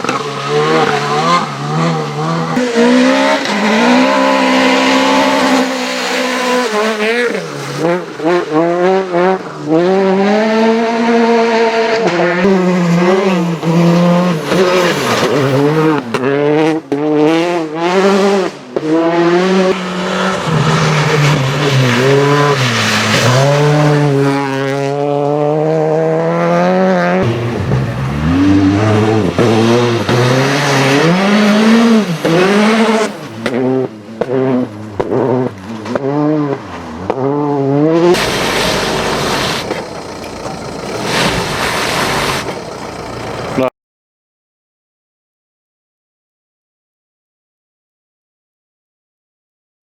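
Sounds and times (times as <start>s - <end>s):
rally car engines revving: 0.0s - 43.7s.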